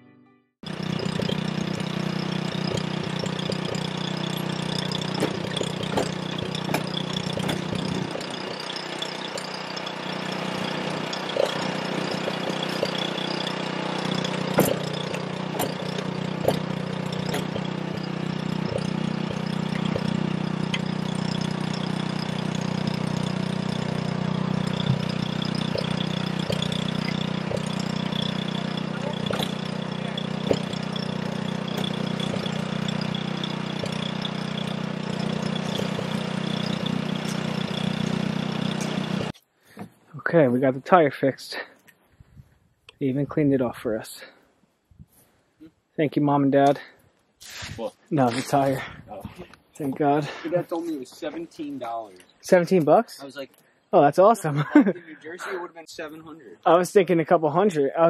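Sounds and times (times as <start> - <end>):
sharp knocks and clicks: 0.6 - 24.0, 24.6 - 40.0
engine idling: 0.6 - 39.4.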